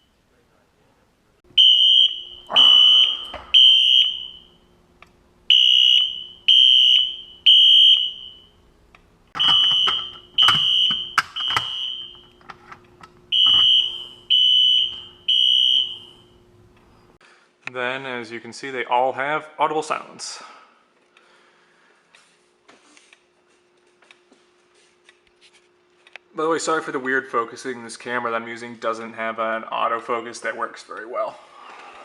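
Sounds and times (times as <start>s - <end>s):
fire alarm horns: 1.5s - 4.8s, 5.5s - 8.7s, 9.4s - 12.6s, 13.3s - 16.6s.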